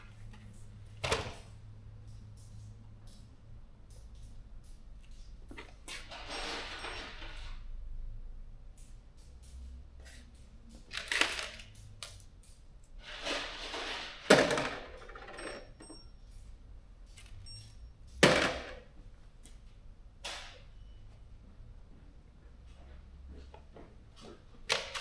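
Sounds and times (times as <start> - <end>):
small metallic clinks: 0.2 - 7.8, 8.6 - 13.0, 15.0 - 18.3
steel bolts clattering into containers: 0.2 - 7.8, 8.8 - 18.9, 20.2 - 21.0.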